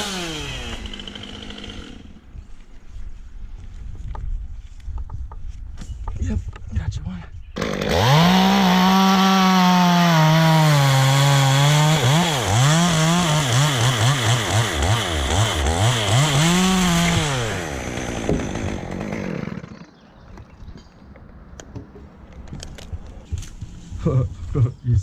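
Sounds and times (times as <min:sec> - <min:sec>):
chainsaw revving: 0:00.0 - 0:02.2, 0:07.6 - 0:20.0.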